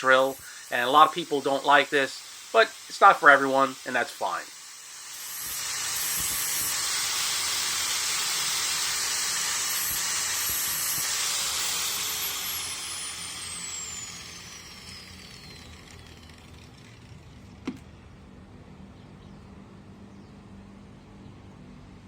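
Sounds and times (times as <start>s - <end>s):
bench grinder grinding: 0.0s - 17.8s
grinder winding down whine: 0.0s - 17.9s.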